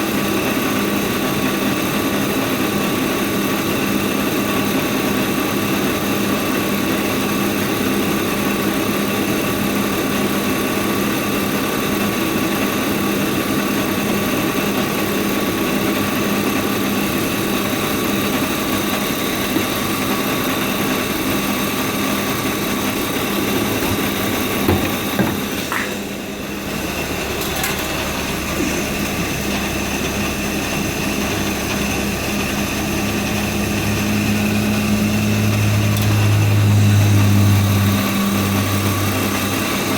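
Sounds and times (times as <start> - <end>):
car engine idling: 16.6 - 39.9.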